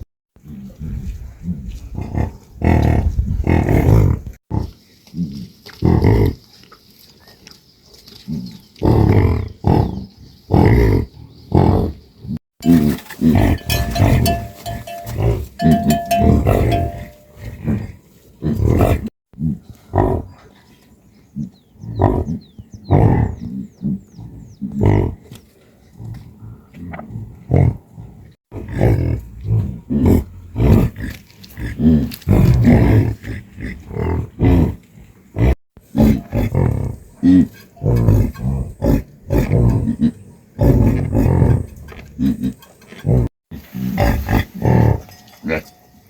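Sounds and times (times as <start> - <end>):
livestock calling: 13.3 - 17.4.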